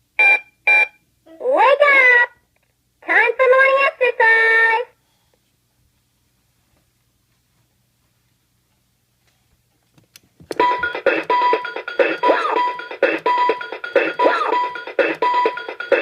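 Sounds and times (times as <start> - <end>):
alarm clock click: 10.6 - 15.9
electronic alarm tune: 10.6 - 16.0.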